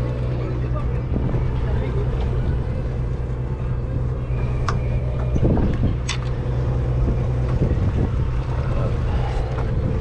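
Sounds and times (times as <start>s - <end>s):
boat engine humming: 0.0s - 10.0s.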